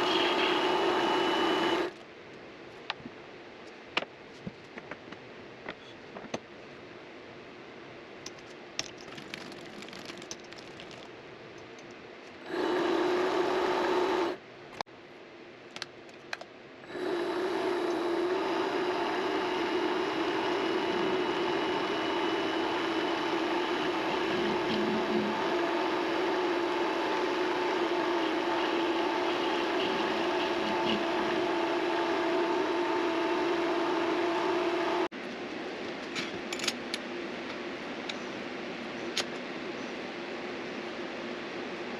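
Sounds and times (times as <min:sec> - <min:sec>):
lathe motor humming: 0:00.0 - 0:01.9, 0:12.5 - 0:14.4, 0:16.9 - 0:35.1.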